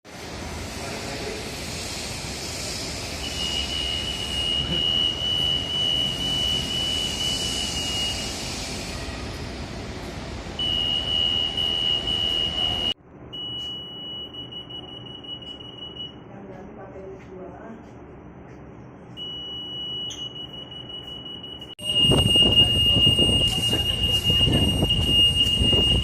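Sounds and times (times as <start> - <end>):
security gate alarm tone: 3.2 - 8.3, 10.6 - 16.3, 19.1 - 26.0.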